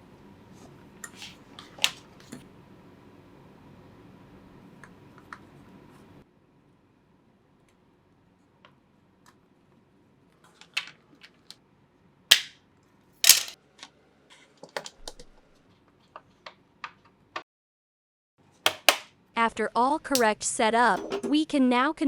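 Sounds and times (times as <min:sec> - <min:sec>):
plastic light switch clicks and snaps: 0:18.7 - 0:19.1.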